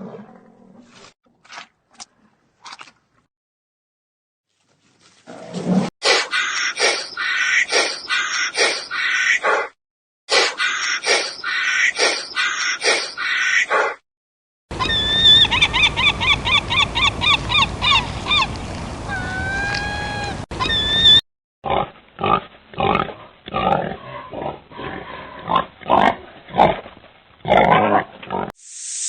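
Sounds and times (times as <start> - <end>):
high squeaky animal calls: 6.2 - 9.7, 10.5 - 13.9, 14.8 - 18.5, 19.1 - 21.2.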